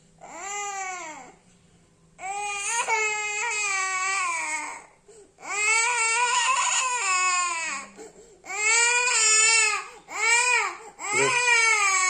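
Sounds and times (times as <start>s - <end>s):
boy crying in loud wails: 8.5s - 12.0s
boy sobbing: 11.0s - 11.6s.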